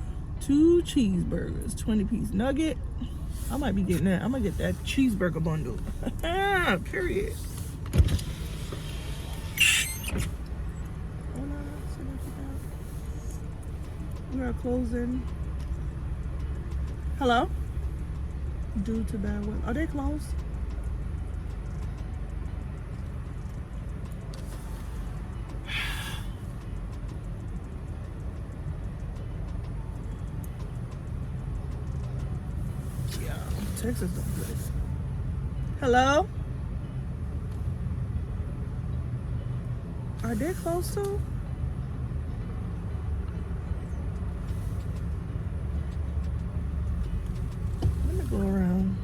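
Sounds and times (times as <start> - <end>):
car rumble inside cabin: 0.0 - 49.0
breathy hiss: 25.6 - 26.5.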